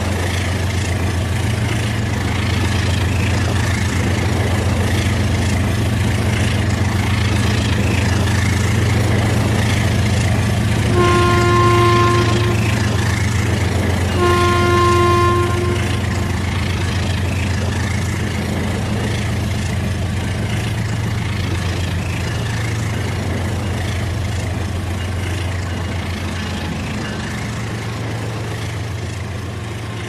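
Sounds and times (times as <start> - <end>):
toy train horn toots: 10.8 - 13.2, 14.1 - 16.5.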